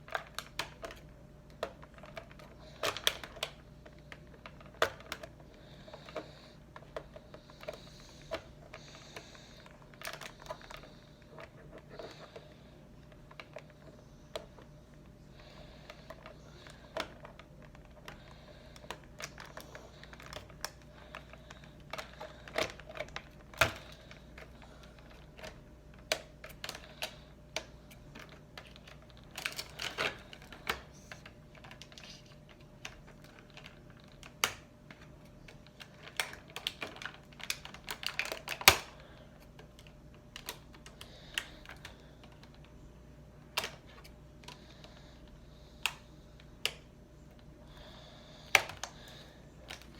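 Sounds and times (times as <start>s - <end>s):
plastic packaging clicking and crackling: 0.0s - 49.9s.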